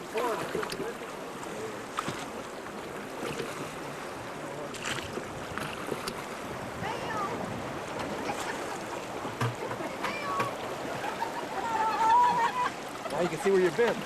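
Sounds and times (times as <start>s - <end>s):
river water rushing: 0.0s - 14.0s
wind on microphone: 4.9s - 10.9s.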